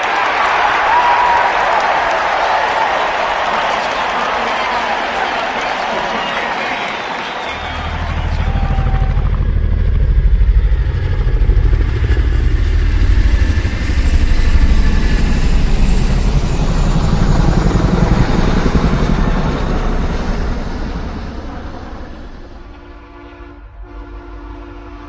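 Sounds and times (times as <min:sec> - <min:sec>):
motor vehicle engine running: 0:07.6 - 0:13.8.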